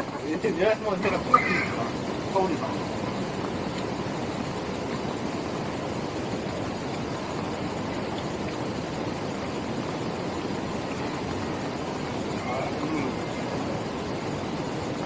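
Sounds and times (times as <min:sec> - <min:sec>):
stream rushing: 0:00.0 - 0:15.0.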